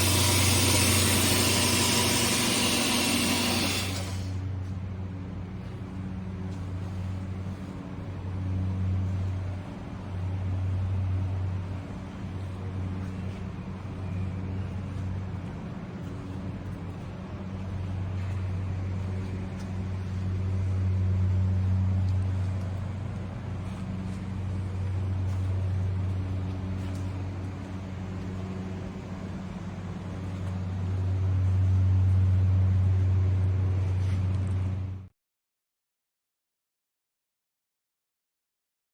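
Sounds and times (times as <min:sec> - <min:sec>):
band saw motor hum: 0:00.0 - 0:04.6.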